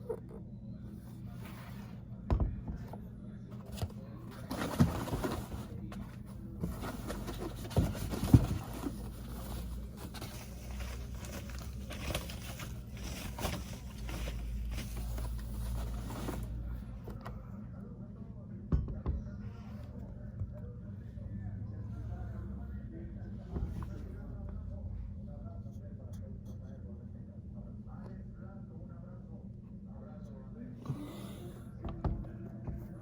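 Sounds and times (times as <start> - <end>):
steady low hum: 0.0 - 33.0
packaging rustling: 4.3 - 16.6
packaging knocks and thumps: 6.6 - 15.4.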